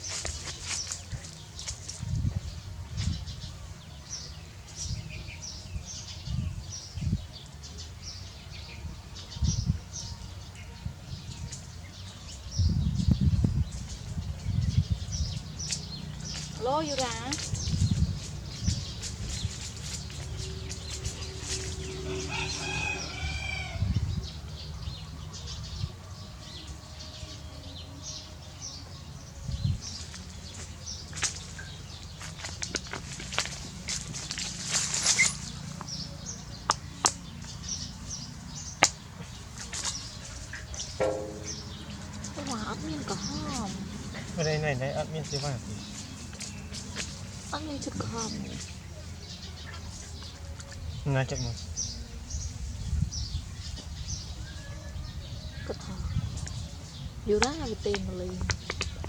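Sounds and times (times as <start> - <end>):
small birds chirping: 0.0 - 23.0, 23.7 - 59.0
dull low thumps: 17.4 - 19.6, 41.0 - 42.1
rooster crowing: 21.8 - 24.0.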